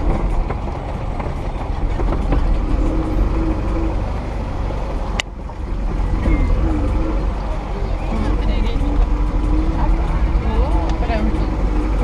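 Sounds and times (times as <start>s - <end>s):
knocks and rattles: 0.0s - 3.6s
car engine and road rumble: 0.0s - 12.0s.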